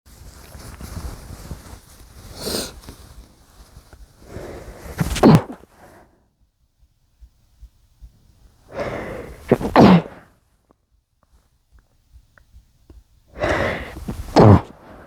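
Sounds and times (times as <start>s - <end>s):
breath in: 2.3s - 2.9s, 4.2s - 6.1s, 8.7s - 10.3s, 13.3s - 15.0s
man sneezing: 5.0s - 5.6s, 9.4s - 10.3s, 13.4s - 15.0s.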